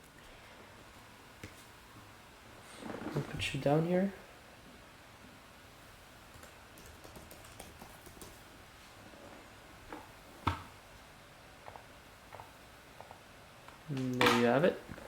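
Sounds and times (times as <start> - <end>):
faint rapid clicks: 6.3 - 8.4.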